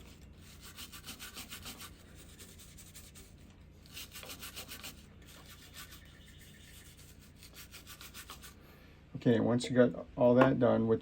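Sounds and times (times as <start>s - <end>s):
brush scrubbing back and forth: 0.0s - 8.6s.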